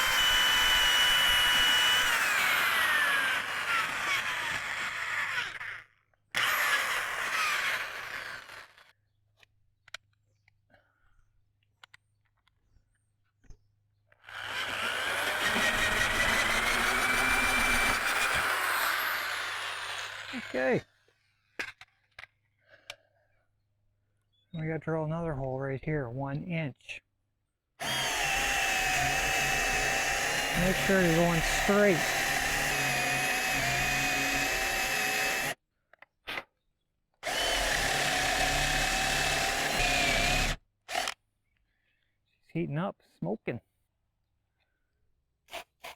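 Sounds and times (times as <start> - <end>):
power drill cutting through wood: 0.0 - 5.8, 6.4 - 8.9, 14.2 - 20.8, 27.8 - 35.6, 37.2 - 41.2.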